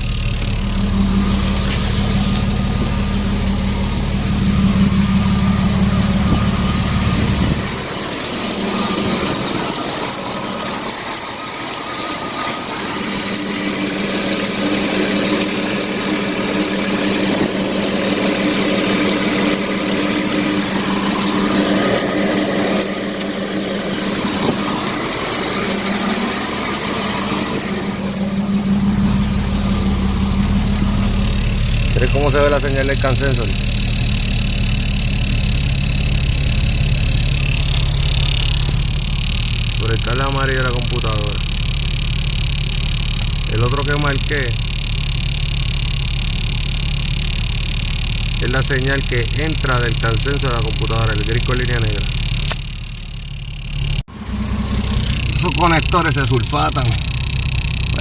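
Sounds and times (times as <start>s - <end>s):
car engine idling: 0.0s - 58.0s.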